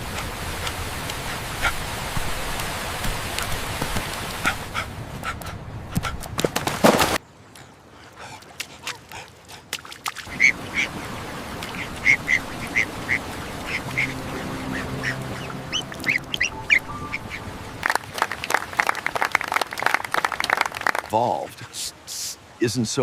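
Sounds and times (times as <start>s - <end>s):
ducks calling: 10.3s - 21.0s
steady hiss: 21.4s - 23.0s.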